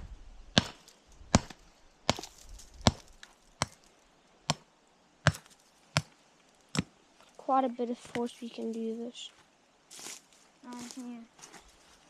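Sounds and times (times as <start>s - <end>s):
hammer striking rock: 0.5s - 3.8s, 4.5s - 6.1s.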